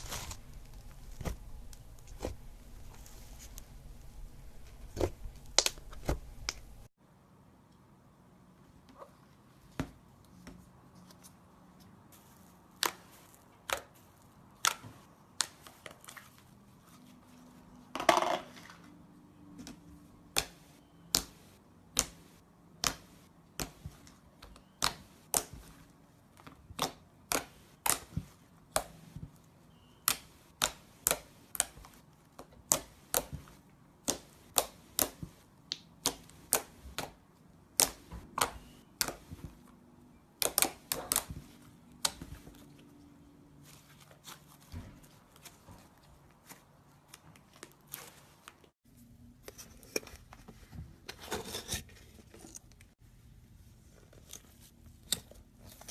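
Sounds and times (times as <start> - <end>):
slime air pockets popping: 0.0 - 6.9.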